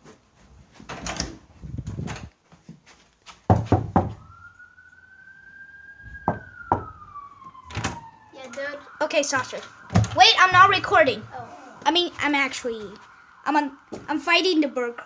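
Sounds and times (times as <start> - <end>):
door hinges creaking: 0.9 - 2.3, 7.7 - 8.0
knocks: 3.5 - 4.2, 6.1 - 7.0.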